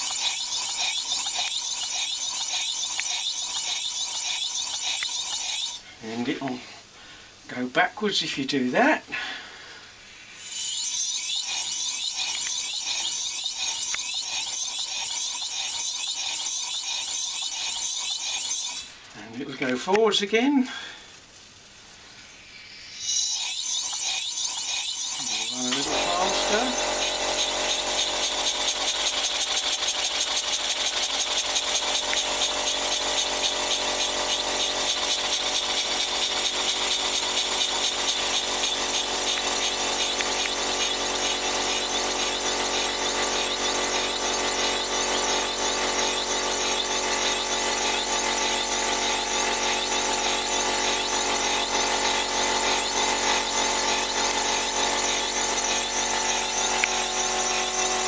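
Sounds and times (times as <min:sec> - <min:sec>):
steam engine running fast: 0:00.0 - 0:05.8, 0:23.3 - 0:58.0.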